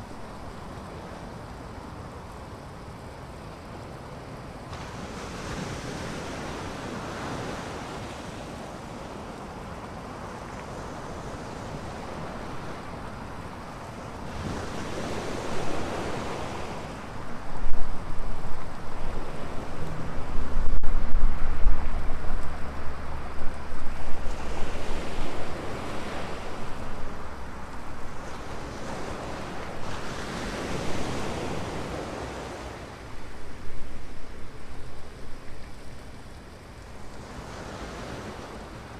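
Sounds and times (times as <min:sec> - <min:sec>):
ocean waves breaking on beach: 0:04.4 - 0:38.9
wind buffeting microphone: 0:10.0 - 0:35.7.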